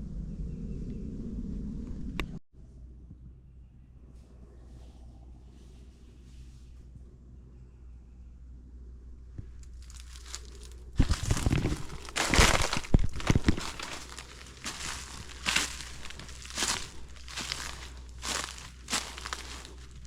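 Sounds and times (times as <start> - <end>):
footsteps crunching dry leaves: 9.6 - 20.0.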